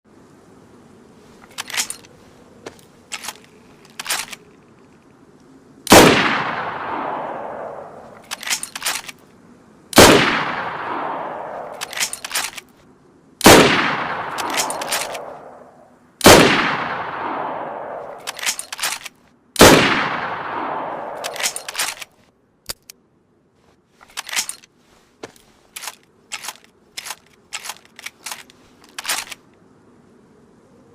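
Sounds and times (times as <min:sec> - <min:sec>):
rifle shots echoing: 0:05.9 - 0:09.1, 0:10.0 - 0:12.6, 0:13.4 - 0:22.1
rifle bolt clicking: 0:08.2 - 0:09.2, 0:11.6 - 0:12.7, 0:14.3 - 0:15.3, 0:18.1 - 0:19.7, 0:21.1 - 0:22.1, 0:25.8 - 0:29.4.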